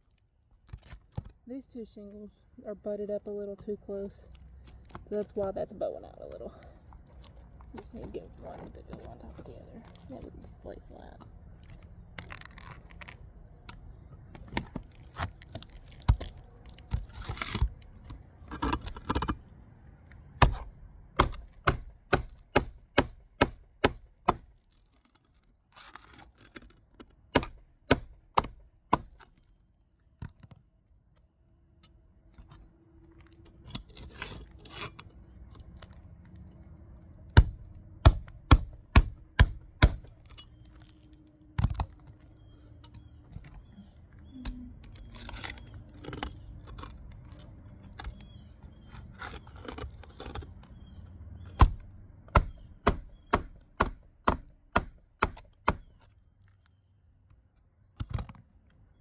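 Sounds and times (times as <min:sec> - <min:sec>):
shingle rustling: 0:04.0 - 0:19.6, 0:20.2 - 0:54.6.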